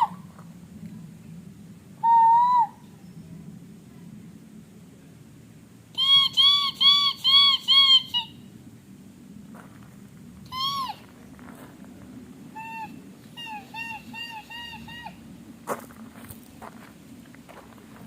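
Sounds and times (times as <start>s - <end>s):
man imitating bird calls: 12.6s - 15.2s.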